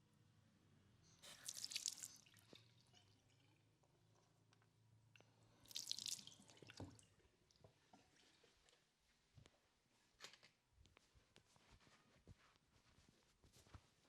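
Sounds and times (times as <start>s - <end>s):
liquid trickling: 1.3s - 3.7s, 5.6s - 7.2s.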